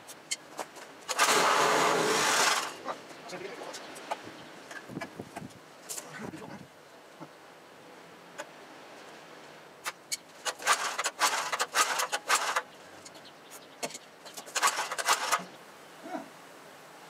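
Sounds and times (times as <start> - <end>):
metal tools clinking: 10.4 - 12.6, 13.8 - 15.5.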